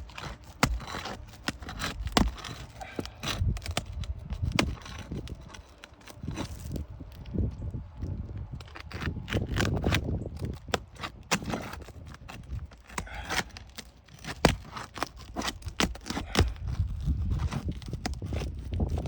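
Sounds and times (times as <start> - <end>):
tools on shingle roof: 0.0 - 19.0
shingles being pried up: 8.7 - 18.8.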